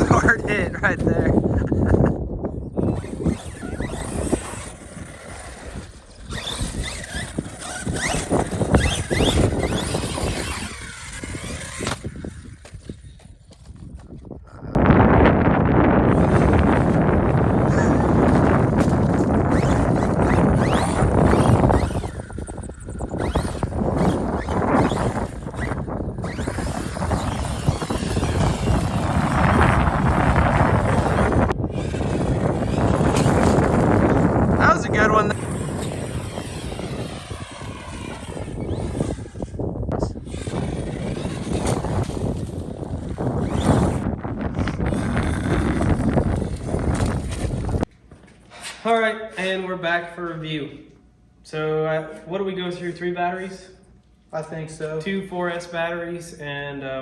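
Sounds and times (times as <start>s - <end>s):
electric motor whining: 2.6s - 13.6s, 14.7s - 47.9s
toy car running across ground: 2.7s - 14.4s, 15.7s - 47.9s.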